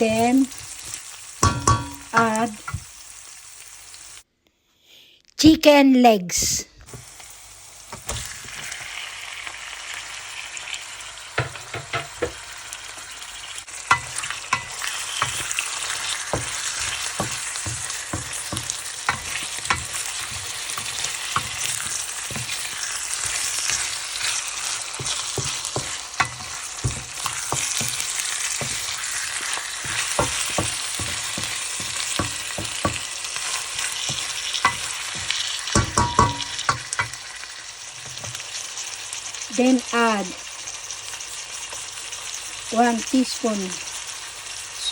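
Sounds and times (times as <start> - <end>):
chicken sizzling in hot oil: 0.0 - 4.3, 6.8 - 44.9
utensil scraping pan: 13.9 - 37.2.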